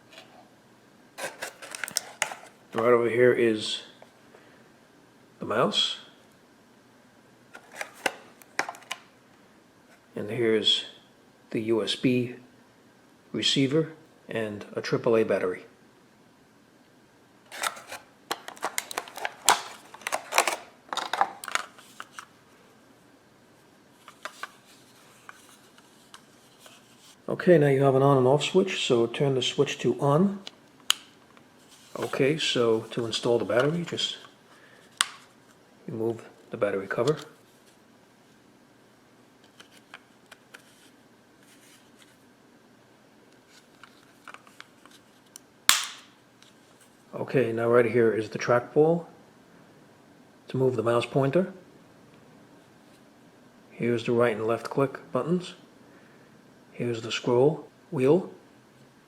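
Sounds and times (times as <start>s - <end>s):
plastic cover snapping: 1.2s - 2.5s, 7.6s - 9.0s, 17.5s - 22.3s, 45.7s - 46.1s
plastic handling rustles: 1.2s - 2.9s, 7.6s - 9.1s, 17.5s - 22.3s, 24.0s - 27.2s, 31.6s - 34.3s.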